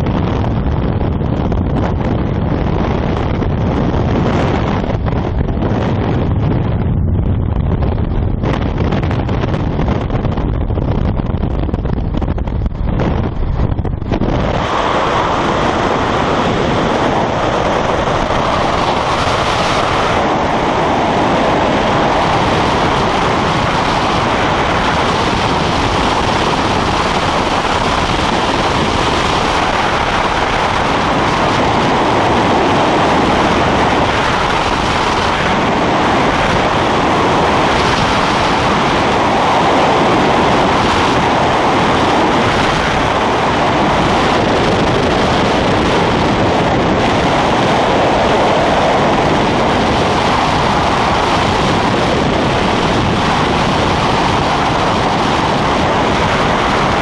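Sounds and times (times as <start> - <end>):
low plane rumble: 0.0 - 57.0
wind rushing over microphone: 0.0 - 57.0.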